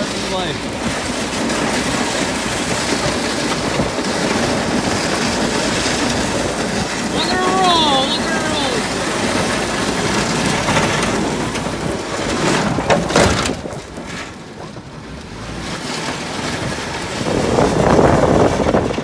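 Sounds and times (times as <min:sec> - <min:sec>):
snow rushing off a plow blade: 0:00.0 - 0:12.9.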